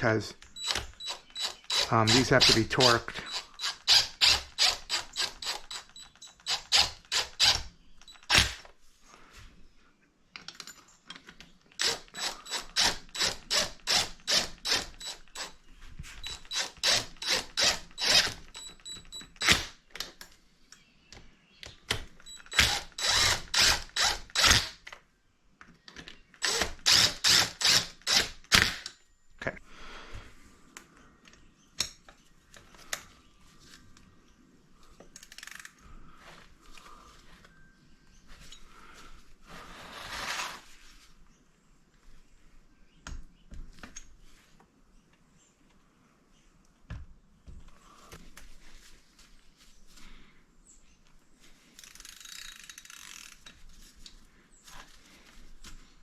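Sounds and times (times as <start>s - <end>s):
ratchet wrench clicking: 51.8s - 53.4s.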